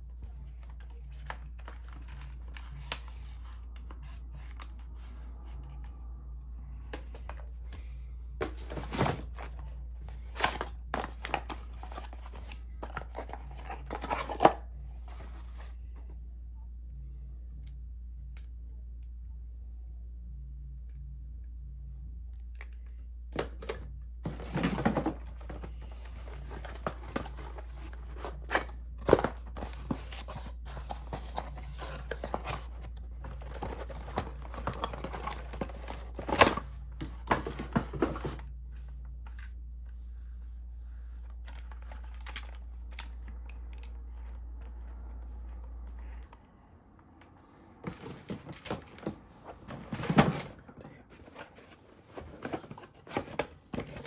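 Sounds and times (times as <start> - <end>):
low steady hum: 0.0 - 54.0
packaging rustling and crinkling: 24.2 - 38.4.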